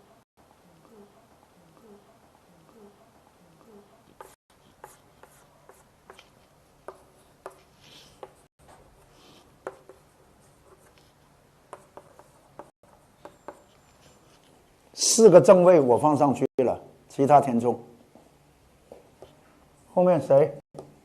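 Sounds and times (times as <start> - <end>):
pen writing on a surface: 4.1 - 14.5.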